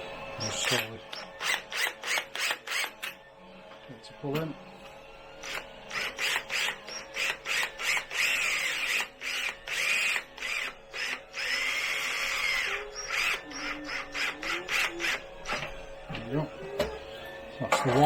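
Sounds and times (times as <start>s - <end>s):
screwdriver turning squeaking bolt: 0.4s - 3.2s, 5.4s - 15.7s.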